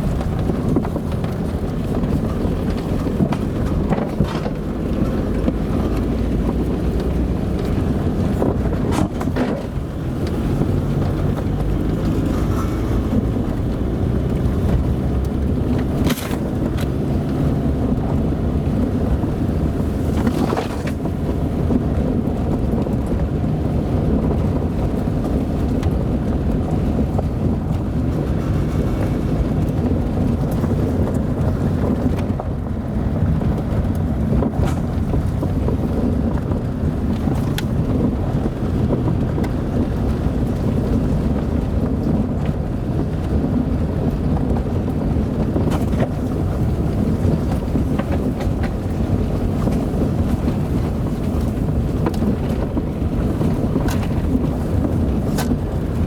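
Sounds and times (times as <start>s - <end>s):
car engine and tyres rumbling: 0.0s - 56.0s.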